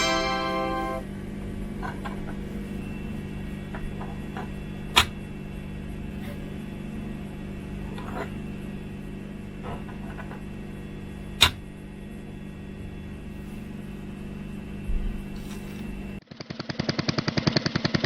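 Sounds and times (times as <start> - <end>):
steady low hum: 0.0 - 16.3
sharp click: 11.4 - 11.6.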